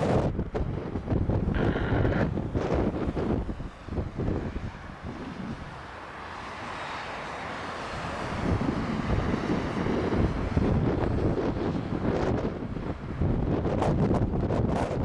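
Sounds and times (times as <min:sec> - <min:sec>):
jet airliner engine noise: 0:00.0 - 0:15.0
wind buffeting microphone: 0:00.0 - 0:15.0.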